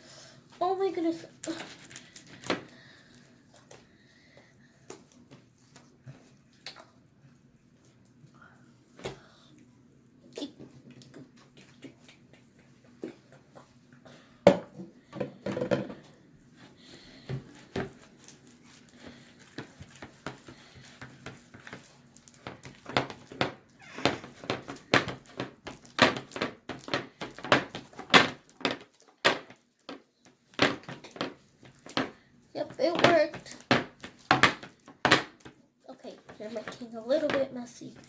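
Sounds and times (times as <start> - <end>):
faint steady hum: 0.0 - 25.5.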